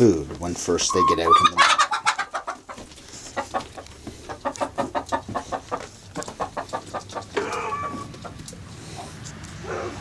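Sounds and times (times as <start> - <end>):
chickens clucking: 0.4 - 10.0.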